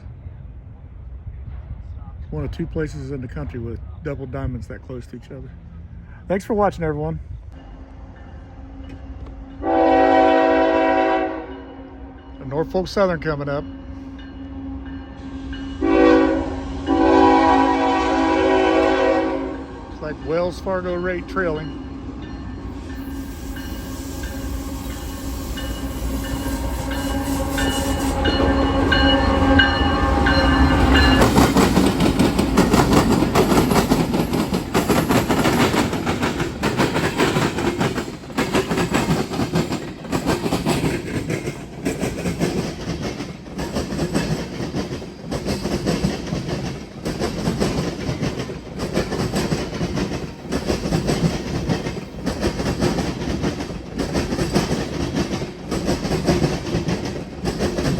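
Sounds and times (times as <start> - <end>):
diesel engines: 0.0 - 11.1
locomotive horn: 8.0 - 12.2, 14.5 - 20.1, 24.0 - 31.1
train wheels banging over crossing: 22.4 - 57.9.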